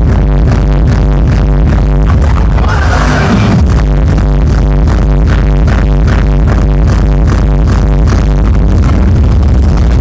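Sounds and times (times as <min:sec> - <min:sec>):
electronic dance music: 0:00.0 - 0:10.0
pounding kick drum: 0:00.0 - 0:10.0.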